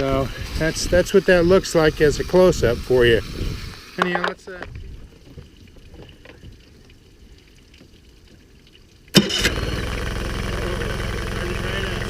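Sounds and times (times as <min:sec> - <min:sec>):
outboard motor starting and idling: 0:09.1 - 0:12.0.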